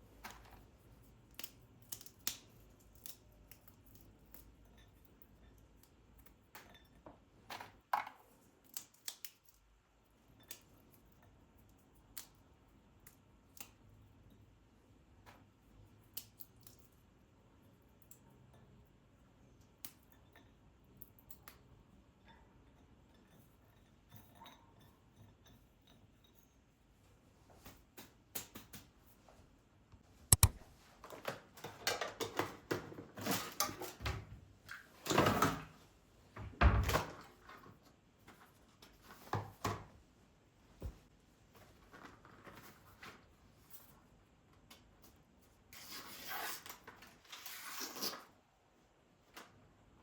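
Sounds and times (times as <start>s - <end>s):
sharp click: 30.3s - 30.6s.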